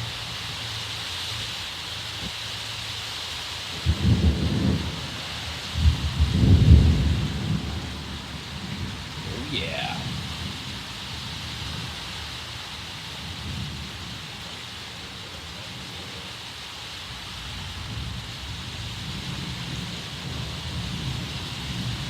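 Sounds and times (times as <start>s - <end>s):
steady background hiss: 6.5s - 21.8s.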